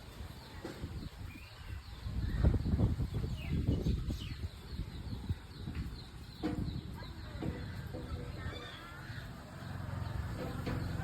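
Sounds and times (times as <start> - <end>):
chickens clucking: 5.2 - 11.0.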